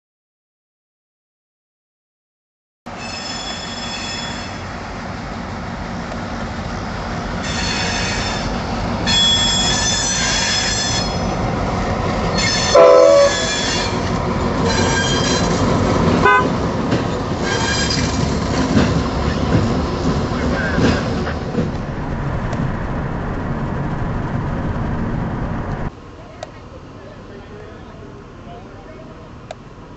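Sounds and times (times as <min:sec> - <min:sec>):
high-pitched wheel squeal: 0:02.9 - 0:04.7, 0:07.4 - 0:08.5, 0:09.1 - 0:11.3, 0:12.3 - 0:15.6, 0:17.4 - 0:18.2
train rumbling by: 0:02.9 - 0:29.9
train horn blast: 0:12.4 - 0:14.0, 0:16.2 - 0:16.6.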